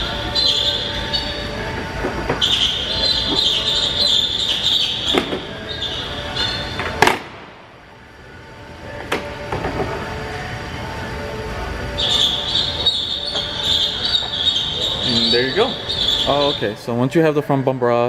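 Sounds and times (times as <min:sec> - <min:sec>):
plastic squealing: 0:00.0 - 0:07.0, 0:12.0 - 0:16.8.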